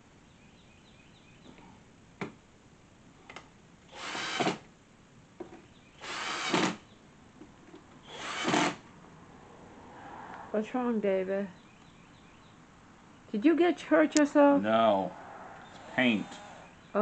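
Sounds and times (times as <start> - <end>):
power drill bursts: 3.9 - 4.6, 6.0 - 6.8, 8.0 - 8.8, 15.8 - 16.7.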